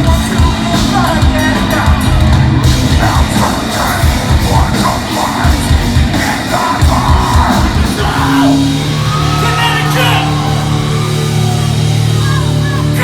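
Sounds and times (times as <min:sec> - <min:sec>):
distorted guitars: 0:00.0 - 0:13.0
heavy metal band playing: 0:00.0 - 0:13.0
shouted vocals: 0:00.6 - 0:13.0.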